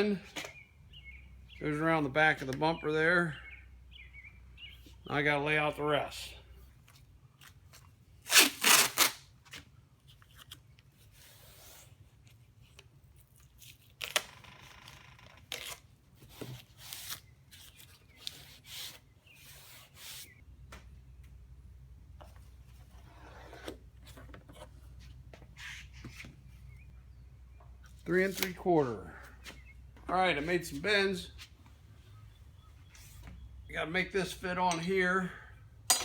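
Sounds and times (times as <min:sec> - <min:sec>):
tubing and tools rubbing and scraping: 0:15.6 - 0:20.4, 0:22.2 - 0:26.9.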